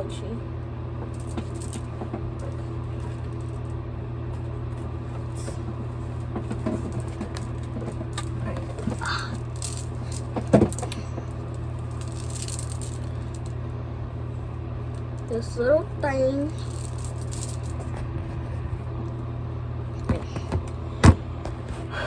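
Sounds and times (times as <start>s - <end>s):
steady low hum: 0.0s - 22.0s
small toys rattling and clicking: 1.2s - 3.7s, 6.5s - 13.5s, 16.4s - 18.0s.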